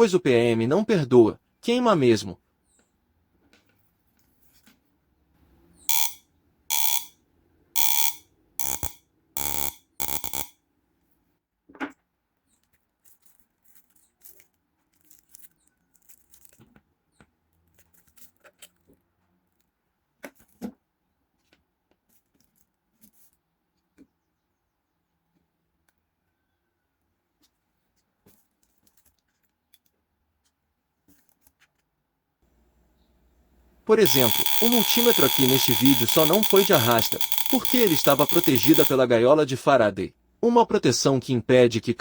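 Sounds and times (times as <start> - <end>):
pulse generator buzzing bursts: 7.8 - 10.5, 34.0 - 39.0.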